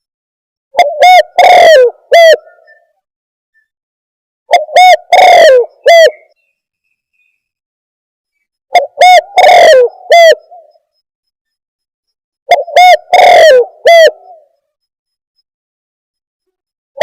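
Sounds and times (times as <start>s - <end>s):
dove cooing loudly: 0.7s - 2.8s, 4.5s - 6.3s, 8.7s - 10.7s, 12.5s - 14.6s.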